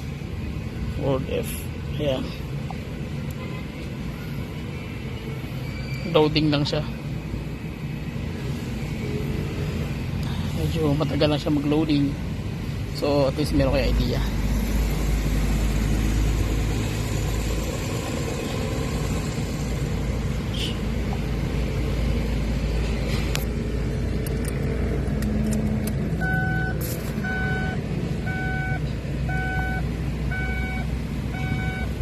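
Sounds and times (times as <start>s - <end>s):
motor vehicles rumbling: 0.0s - 32.0s
short electronic beep: 26.2s - 30.8s, 31.4s - 31.9s.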